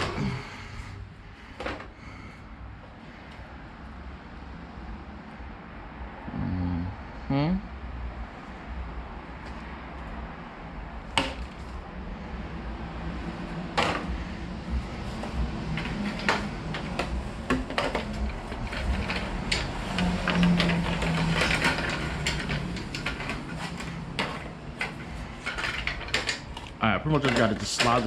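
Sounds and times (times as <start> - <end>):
plastic parts clicking and knocking: 1.5 - 2.0, 11.1 - 11.8, 13.7 - 28.0.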